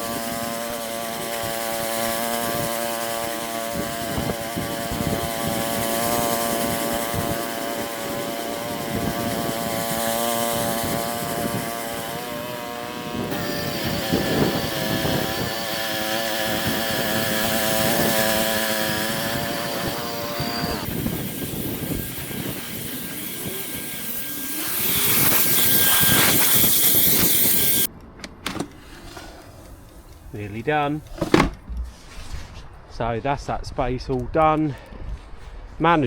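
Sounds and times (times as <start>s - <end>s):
rotating brush scrubbing pavement: 0.0s - 27.9s
petrol engine running: 12.2s - 27.9s.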